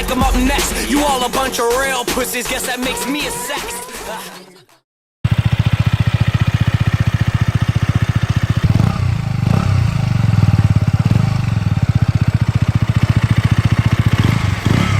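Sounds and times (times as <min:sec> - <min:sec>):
motorcycle engine idling and revving: 0:05.2 - 0:14.9.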